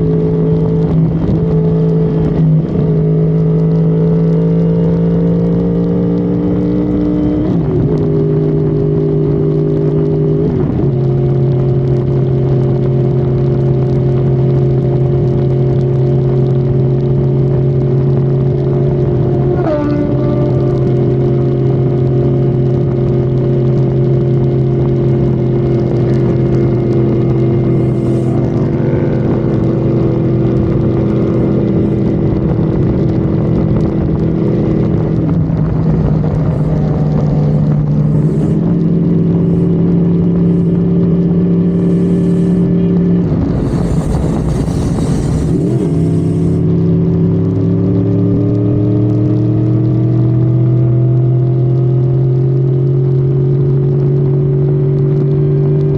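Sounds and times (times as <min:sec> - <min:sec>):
car engine at high revs: 0:00.0 - 0:55.9
burst of rushing noise: 0:27.6 - 0:29.8, 0:35.7 - 0:46.7.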